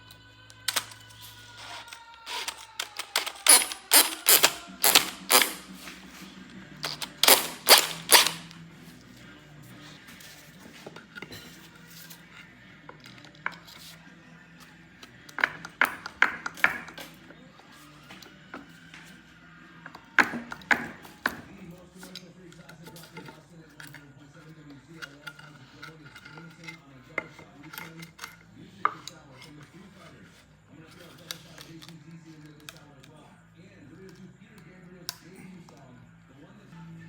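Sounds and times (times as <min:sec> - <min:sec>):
hand tools clicking on metal: 0:00.6 - 0:05.7, 0:06.8 - 0:08.6.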